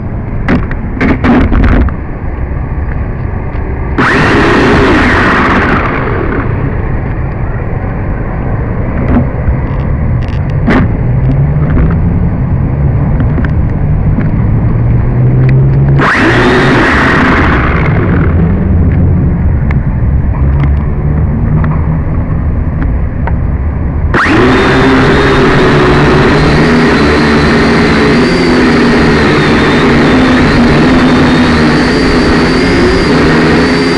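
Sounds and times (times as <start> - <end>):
toy drone motors whining: 4.0 - 6.8, 16.0 - 18.5, 24.1 - 33.9.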